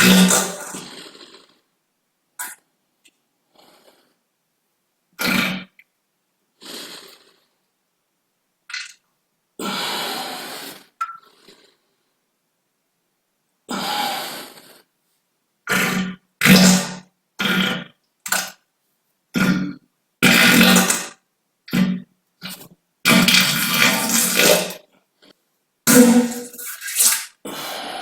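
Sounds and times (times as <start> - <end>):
human farts: 0.0 - 1.6, 2.4 - 2.6, 5.2 - 5.9, 8.7 - 9.0, 15.6 - 18.6, 19.3 - 24.9, 25.9 - 27.4.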